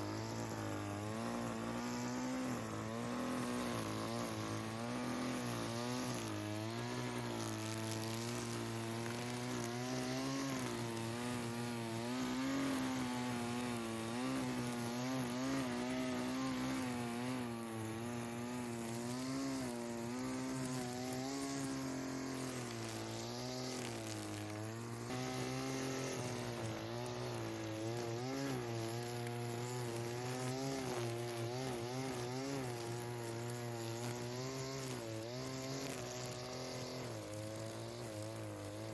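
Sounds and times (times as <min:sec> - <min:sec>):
string trimmer engine: 0:00.0 - 0:38.9.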